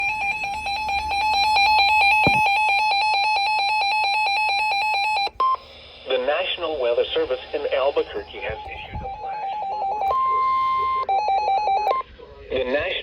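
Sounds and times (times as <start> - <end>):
pulsing electronic alarm tone: 0.0 - 5.4, 7.4 - 12.0.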